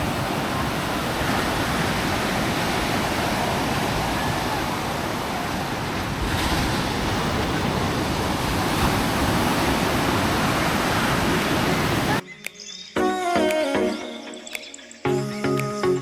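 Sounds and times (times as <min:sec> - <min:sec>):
ocean surf breaking: 0:00.0 - 0:12.2
music: 0:12.2 - 0:16.0.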